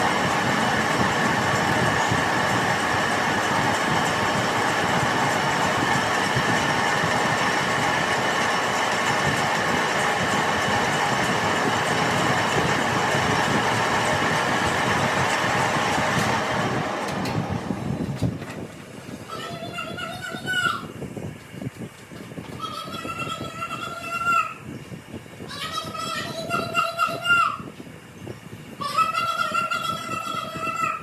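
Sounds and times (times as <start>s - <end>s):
lathe running with whining tones: 0.0s - 19.2s.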